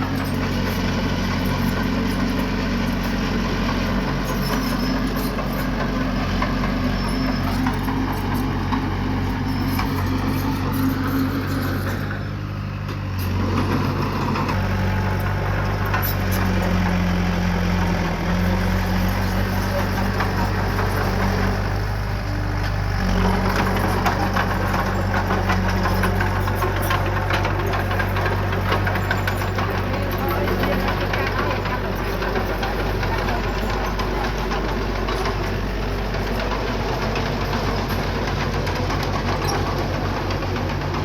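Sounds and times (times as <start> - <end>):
diesel engine running: 0.0 - 41.0.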